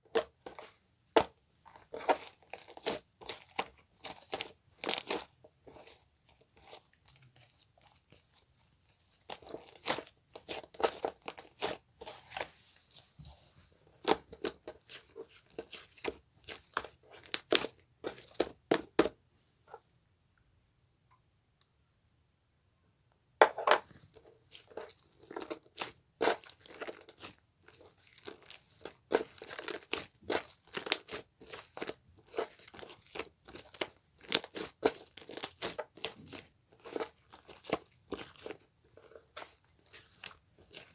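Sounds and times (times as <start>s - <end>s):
crinkling and tearing: 24.5s - 40.9s.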